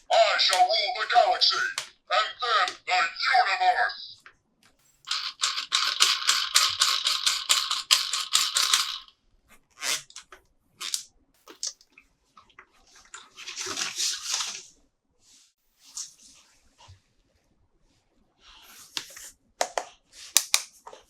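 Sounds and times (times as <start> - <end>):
scattered clicks: 5.0 - 9.1
toy packaging crackling: 5.1 - 9.1.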